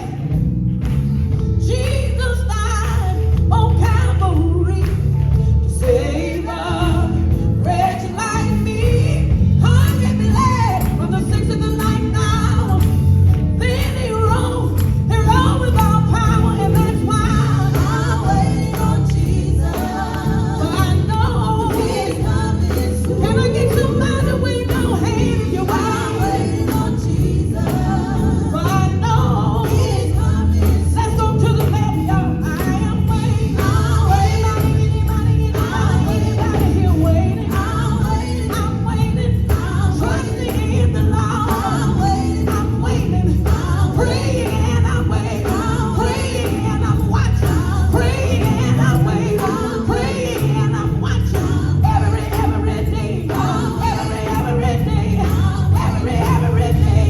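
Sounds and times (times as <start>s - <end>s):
band with heavy bass and drums: 0.0s - 57.0s
choir singing gospel: 0.0s - 57.0s.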